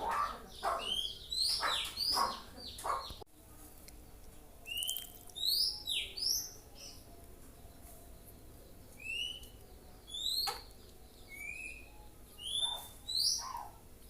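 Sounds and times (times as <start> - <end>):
songbird calling: 0.0 - 3.2, 8.9 - 13.8.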